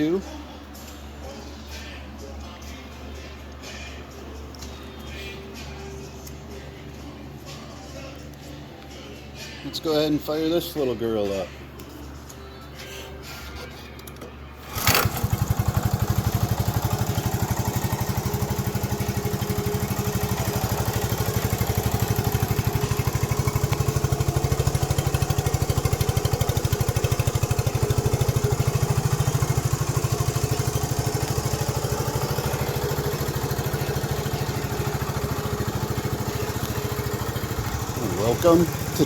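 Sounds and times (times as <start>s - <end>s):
small engine starting and idling: 14.6s - 39.0s.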